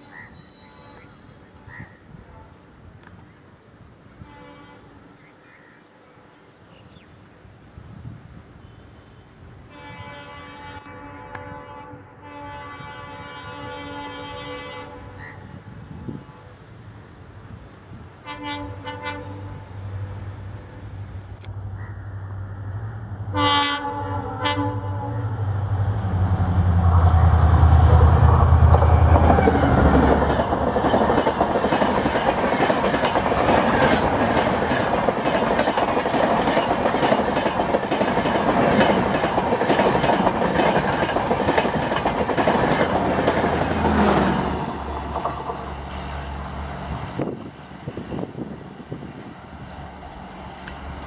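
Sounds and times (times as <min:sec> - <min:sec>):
locomotive horn blast: 0:04.2 - 0:05.0, 0:09.7 - 0:15.2, 0:18.2 - 0:19.8, 0:23.3 - 0:25.6
coaches clattering over rail joints: 0:28.7 - 0:45.6.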